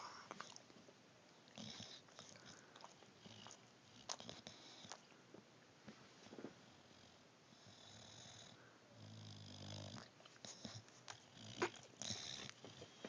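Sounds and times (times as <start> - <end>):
dog snoring: 1.5 - 5.0, 6.6 - 13.0.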